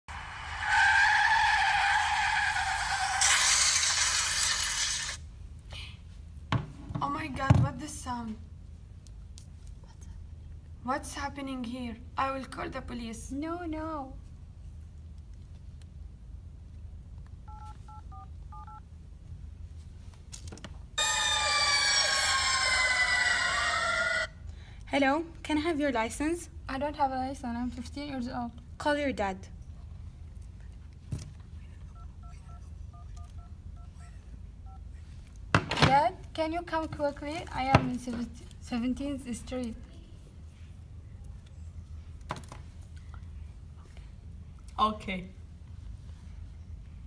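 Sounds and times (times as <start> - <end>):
car tyres screeching: 0.1 - 5.2, 21.0 - 24.4
police siren: 21.0 - 24.3.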